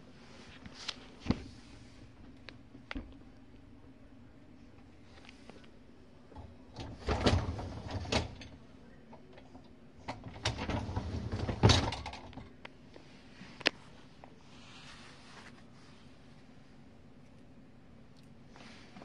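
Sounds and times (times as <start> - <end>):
dishwasher racks sliding and clunking: 6.3 - 8.6, 9.3 - 12.6.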